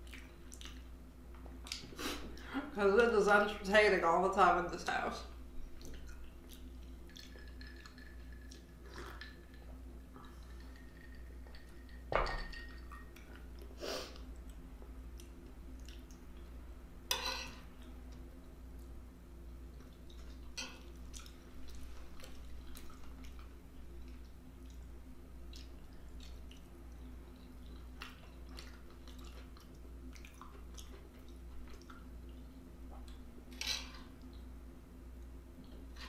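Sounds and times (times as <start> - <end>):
chewing food: 0.0 - 2.5, 5.7 - 12.0, 13.0 - 16.5, 19.7 - 33.3
steady low hum: 0.0 - 36.0.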